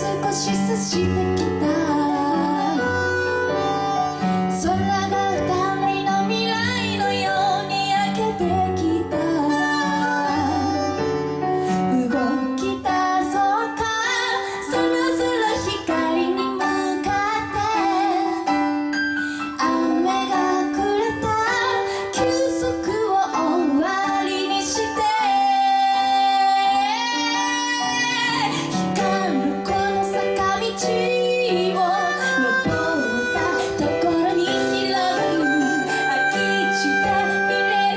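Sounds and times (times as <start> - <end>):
live band playing: 32.2 - 37.9.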